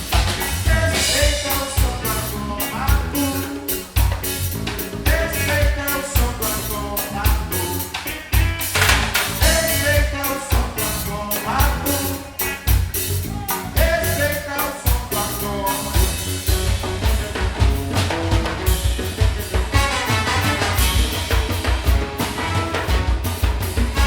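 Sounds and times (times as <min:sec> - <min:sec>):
drum kit beat: 0:00.0 - 0:24.0
live band playing: 0:00.0 - 0:24.0
person singing: 0:00.4 - 0:04.2, 0:05.0 - 0:08.4, 0:09.4 - 0:16.3.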